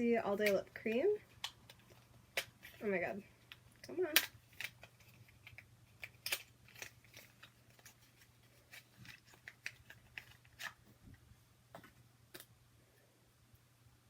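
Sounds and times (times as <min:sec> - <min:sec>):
packaging clicking and crinkling: 0:03.4 - 0:10.9.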